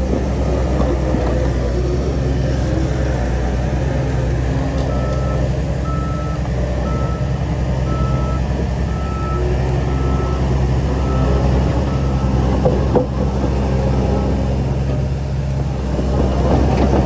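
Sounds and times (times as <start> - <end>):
diesel engine running: 0.0 - 17.0
reversing alarm beeping: 4.9 - 14.1.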